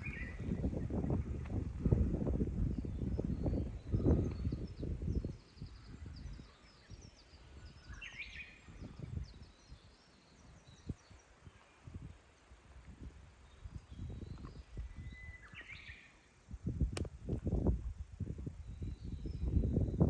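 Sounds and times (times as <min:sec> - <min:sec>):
wind rumbling on microphone: 0:00.0 - 0:20.0.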